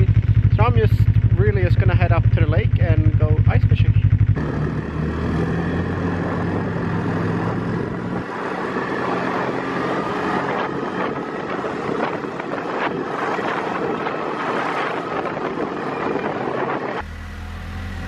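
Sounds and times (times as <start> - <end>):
snowmobile engine hum: 0.0 - 18.0
wind rushing over microphone: 4.4 - 17.0.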